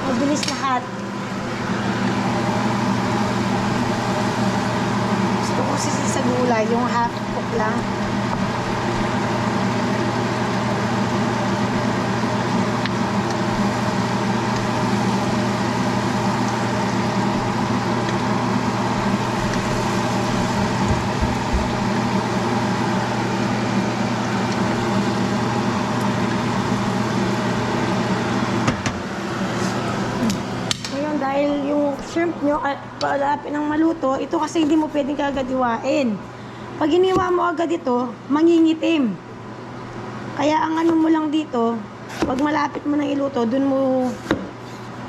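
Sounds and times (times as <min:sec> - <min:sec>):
motor hum: 0:00.0 - 0:44.6.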